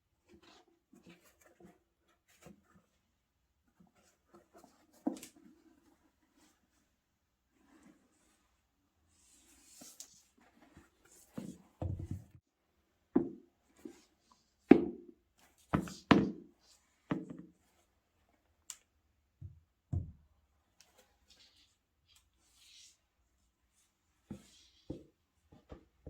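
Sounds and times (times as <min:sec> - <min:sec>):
sneakers knocking on a surface: 0:19.4 - 0:20.2.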